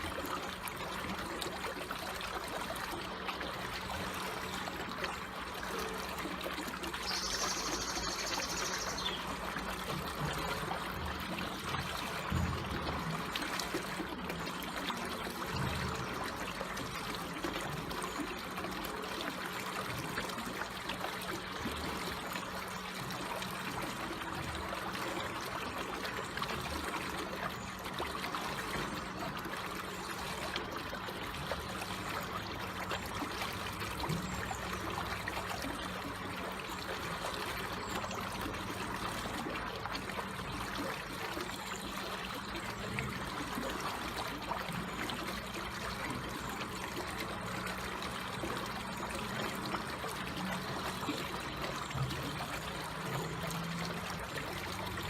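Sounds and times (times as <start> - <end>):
water flowing and trickling: 0.0 - 55.0.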